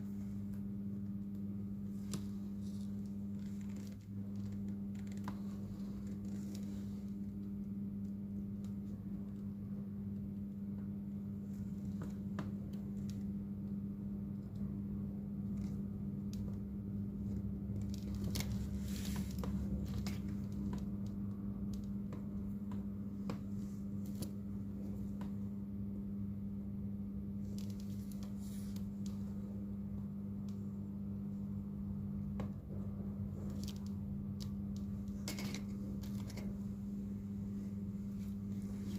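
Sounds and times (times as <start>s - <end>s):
low electrical hum: 0.0s - 38.9s.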